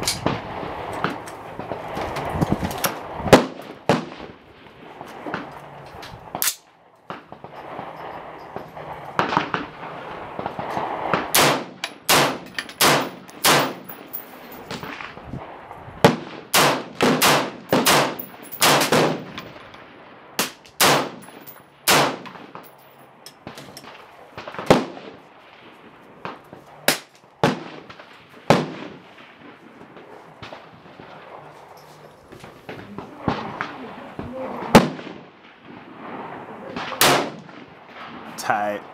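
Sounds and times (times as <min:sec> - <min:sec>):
rifle shots: 0:02.9 - 0:05.5, 0:06.3 - 0:15.2, 0:16.0 - 0:22.8, 0:23.4 - 0:25.2, 0:26.2 - 0:31.4, 0:34.6 - 0:38.3.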